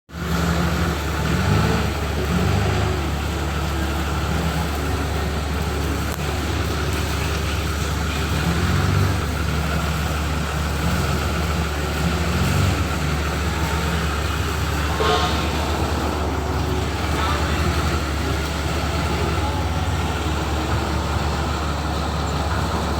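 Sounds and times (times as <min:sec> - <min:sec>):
vehicle engine idling: 0:00.1 - 0:22.9
brief high-pitched sound: 0:14.8 - 0:16.6.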